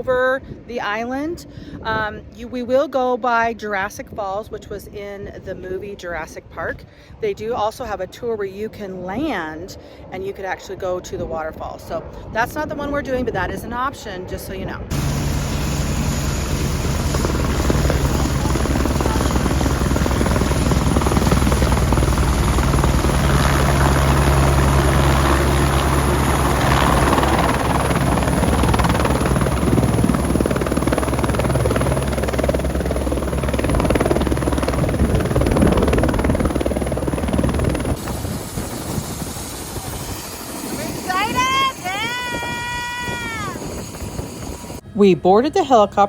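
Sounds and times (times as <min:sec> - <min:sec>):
helicopter rotor and engine rumble: 0:12.0 - 0:44.9
high whine: 0:14.9 - 0:42.1.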